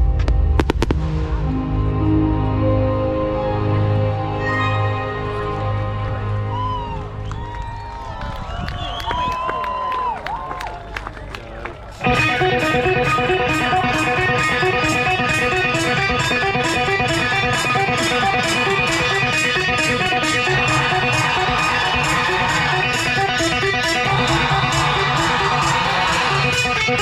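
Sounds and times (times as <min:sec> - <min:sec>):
guitar music with fast beat: 0:12.0 - 0:27.0.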